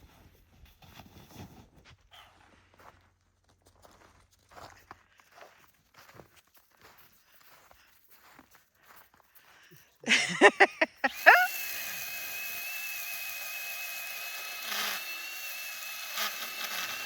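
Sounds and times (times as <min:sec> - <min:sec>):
small chainsaw whining: 0:10.1 - 0:17.0.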